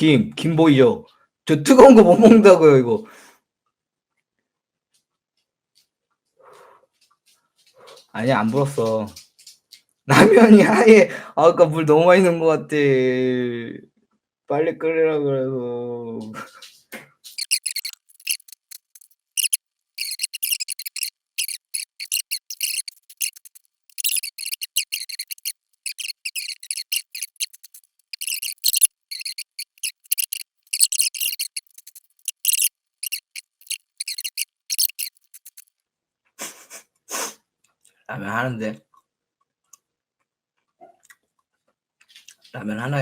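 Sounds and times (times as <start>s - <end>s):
rapid high-pitched clicking and crackling: 17.4s - 35.6s.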